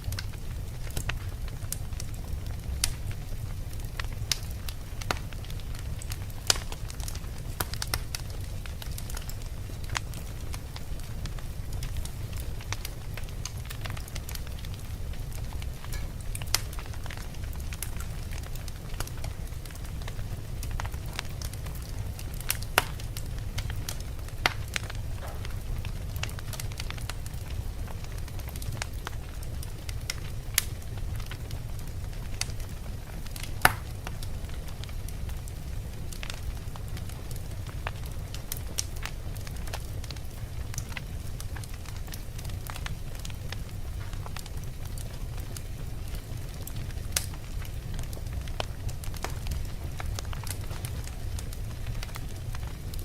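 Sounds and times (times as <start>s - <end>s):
wood fire crackling and popping: 0.0s - 53.0s.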